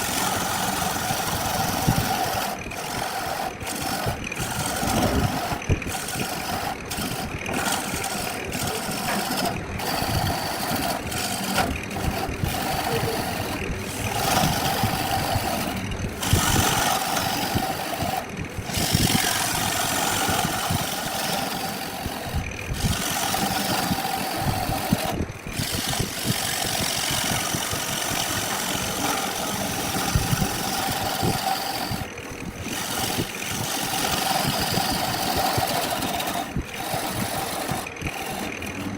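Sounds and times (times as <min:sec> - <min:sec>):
wood lathe whirring: 0:00.0 - 0:38.9.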